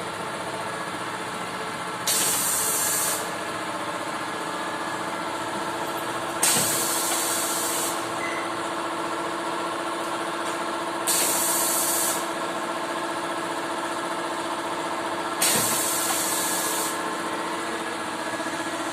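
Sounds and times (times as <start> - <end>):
air hissing out: 2.1 - 3.3, 6.4 - 8.0, 11.1 - 12.3, 15.4 - 17.0.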